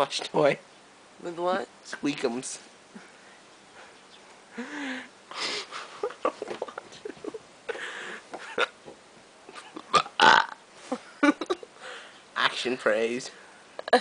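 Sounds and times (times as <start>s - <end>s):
man hiccuping: 8.4s - 8.8s, 9.5s - 10.6s.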